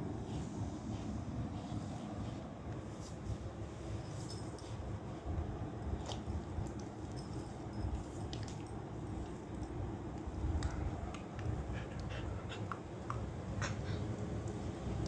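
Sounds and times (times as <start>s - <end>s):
dog breathing heavily: 10.5s - 15.0s.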